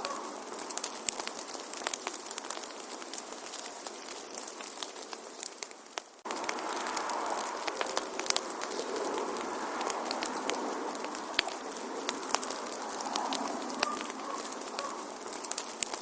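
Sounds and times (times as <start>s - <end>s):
rush of flames: 0.0s - 16.0s
wood fire crackling and popping: 0.0s - 16.0s.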